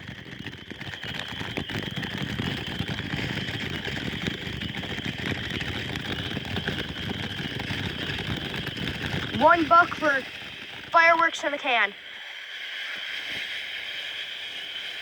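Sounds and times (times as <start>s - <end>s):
firework hissing and crackling: 0.0s - 15.0s.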